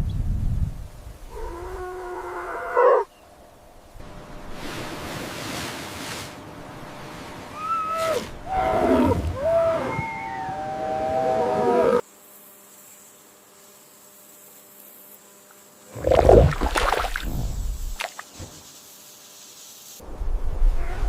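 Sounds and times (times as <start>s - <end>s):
animal crying: 7.6s - 12.0s.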